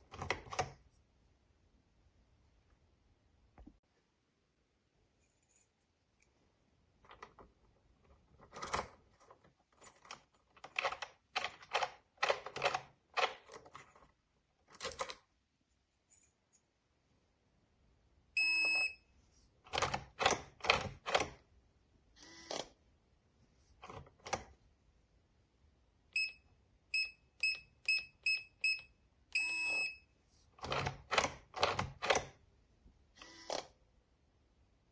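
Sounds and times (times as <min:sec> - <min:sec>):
door lock beeping: 0:18.4 - 0:19.0, 0:26.2 - 0:30.1.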